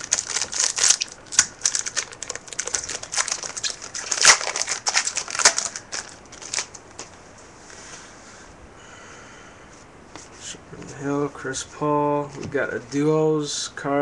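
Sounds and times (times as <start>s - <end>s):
wrapper crinkling and tearing: 0.0s - 7.1s.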